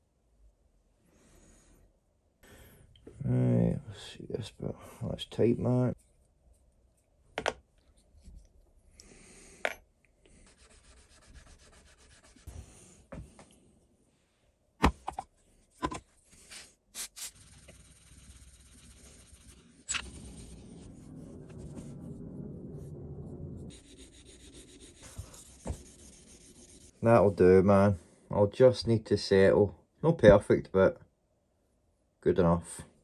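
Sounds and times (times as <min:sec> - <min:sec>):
hand scrubbing on metal: 0:10.4 - 0:12.7, 0:16.4 - 0:21.8, 0:23.7 - 0:27.1.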